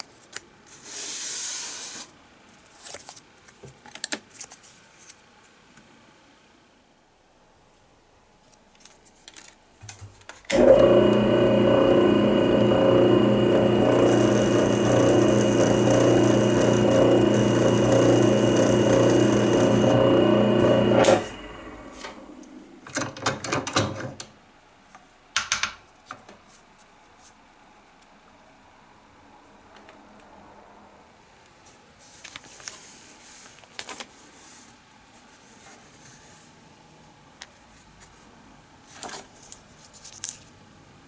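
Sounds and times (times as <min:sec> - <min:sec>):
light clicks and handling sounds: 0:08.4 - 0:10.5
electric power tool running: 0:10.5 - 0:22.5.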